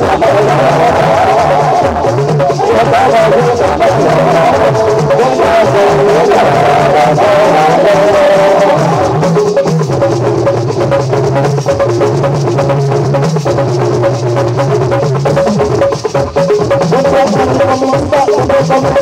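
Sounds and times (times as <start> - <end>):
bass line: 0.0 - 19.0
drum kit beat: 0.0 - 19.0
live band playing: 0.0 - 19.0.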